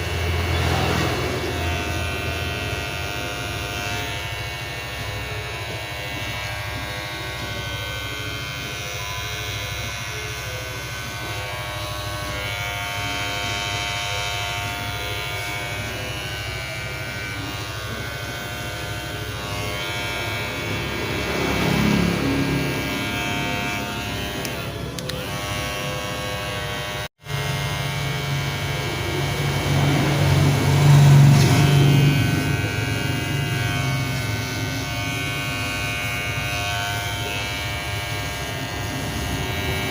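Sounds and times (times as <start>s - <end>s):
electric hair clipper buzzing: 0.0s - 39.9s.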